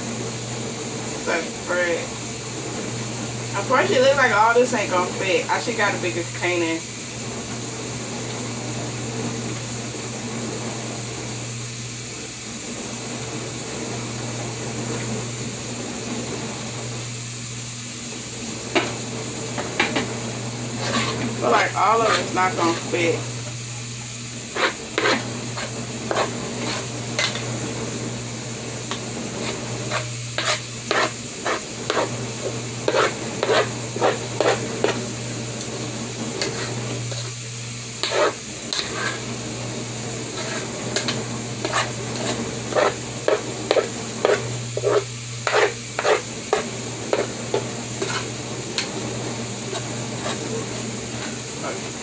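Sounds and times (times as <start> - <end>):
utensil stirring batter: 18.4 - 52.0.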